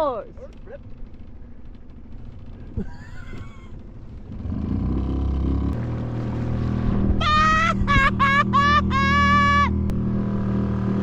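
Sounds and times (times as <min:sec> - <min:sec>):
outboard motor running: 0:00.0 - 0:11.0.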